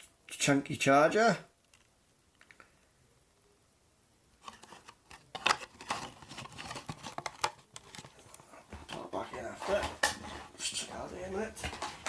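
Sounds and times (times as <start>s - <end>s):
packaging being handled: 4.4s - 10.4s.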